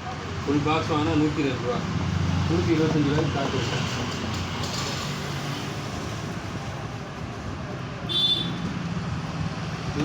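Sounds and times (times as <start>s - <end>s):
road traffic noise: 0.0s - 10.0s.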